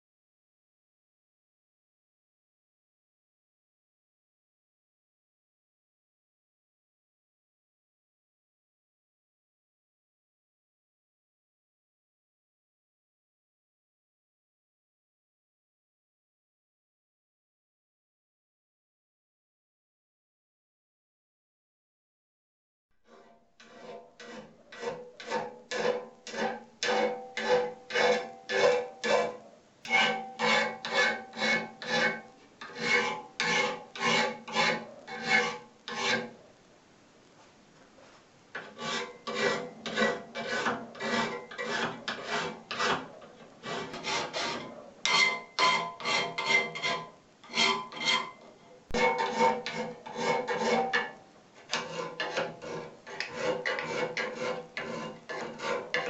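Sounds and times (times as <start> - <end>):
hand file scraping metal: 23.1 - 36.4, 38.6 - 56.0.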